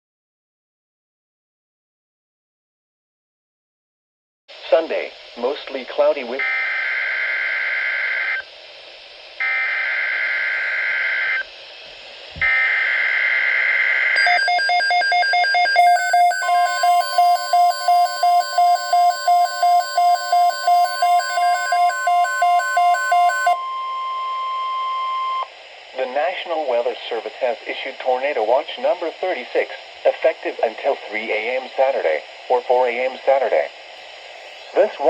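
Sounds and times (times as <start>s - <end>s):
two-tone digital data bursts: 14.2s - 23.6s
pulsing electronic alarm beeps: 14.2s - 25.5s
steady warning alarm tone: 14.2s - 25.5s.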